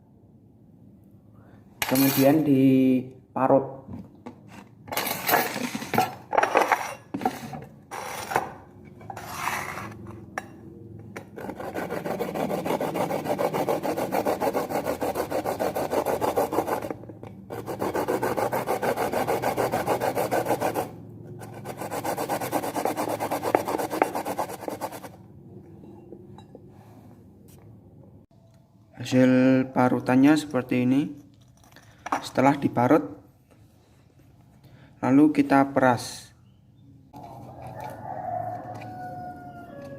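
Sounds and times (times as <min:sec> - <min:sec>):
ginger scraping on grater: 0:11.4 - 0:25.1.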